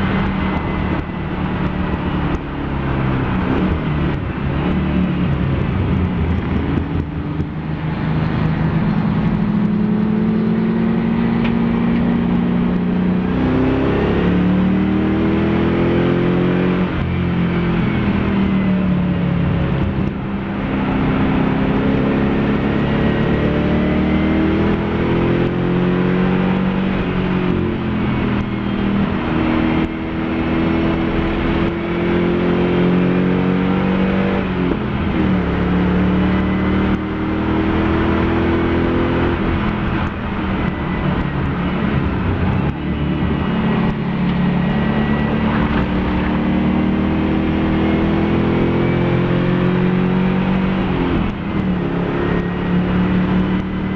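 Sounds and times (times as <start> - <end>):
race car engine accelerating: 0.0 - 53.9.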